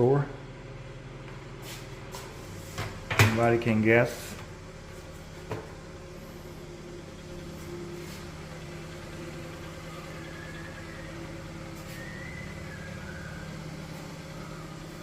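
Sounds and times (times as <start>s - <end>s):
paint sprayer motor humming: 4.1s - 15.0s.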